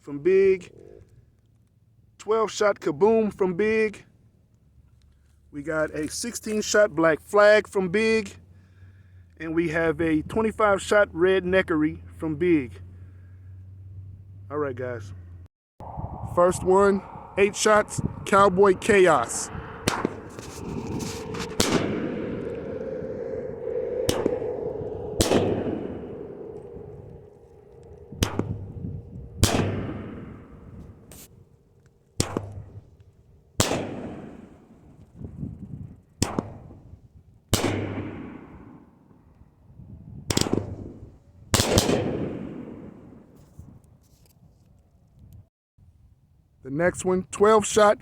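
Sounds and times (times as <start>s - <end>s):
firework aerial break echoing: 15.8s - 30.7s.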